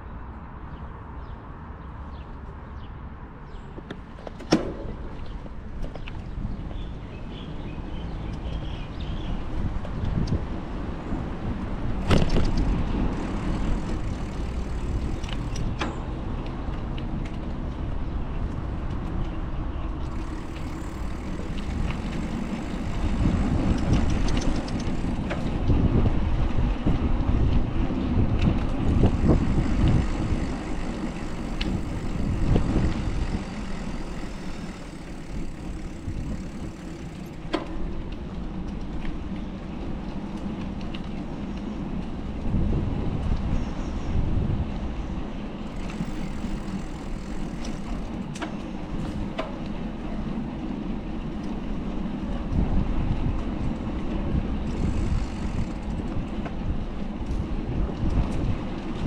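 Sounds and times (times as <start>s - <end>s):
passing cars and trucks rumble: 0.0s - 59.0s.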